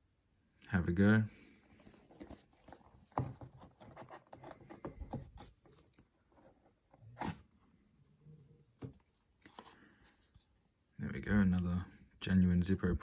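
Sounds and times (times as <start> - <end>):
cardboard box rustling: 1.7 - 7.5.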